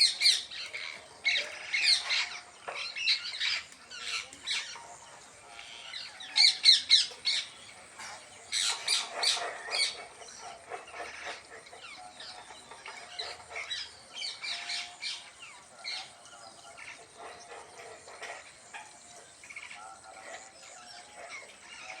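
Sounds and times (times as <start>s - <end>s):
parrots squawking and chattering: 0.0s - 22.0s.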